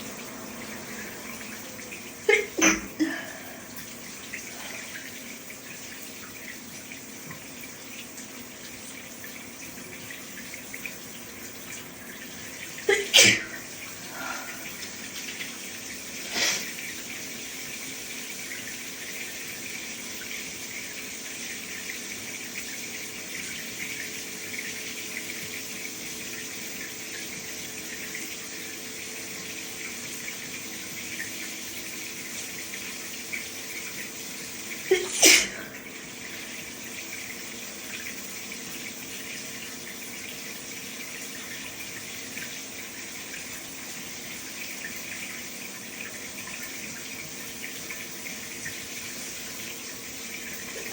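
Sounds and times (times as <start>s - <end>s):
shower water running: 0.0s - 50.9s
person sneezing: 2.3s - 3.6s, 12.9s - 14.6s, 16.3s - 16.7s, 34.9s - 35.8s.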